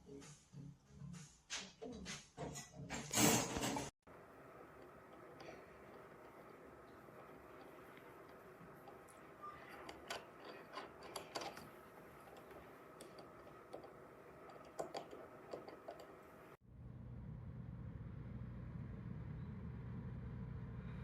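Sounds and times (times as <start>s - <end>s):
low steady hum: 4.1s - 21.0s
small metal gear clicking: 4.8s - 16.4s.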